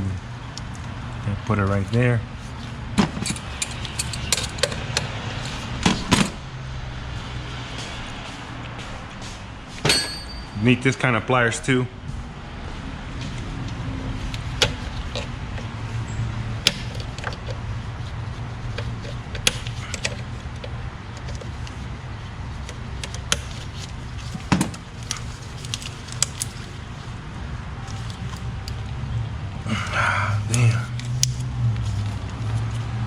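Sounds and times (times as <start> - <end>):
steady low hum: 0.0 - 33.0
hand tools clinking on metal: 9.8 - 10.7.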